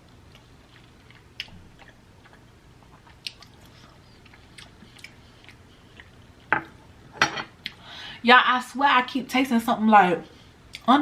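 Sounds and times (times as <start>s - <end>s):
person chewing food: 0.0s - 6.9s.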